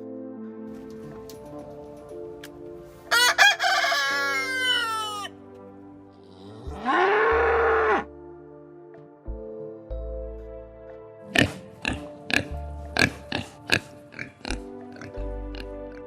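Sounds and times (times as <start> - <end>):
soft background music: 0.0 - 16.0
rooster crowing: 3.1 - 5.3.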